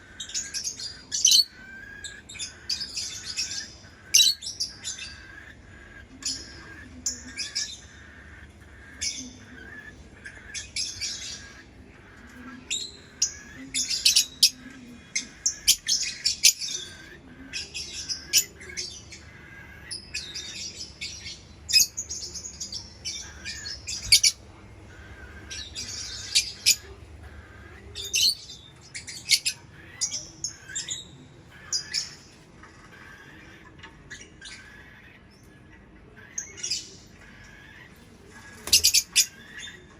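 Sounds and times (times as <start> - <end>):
lovebird chirping: 0.0 - 39.9.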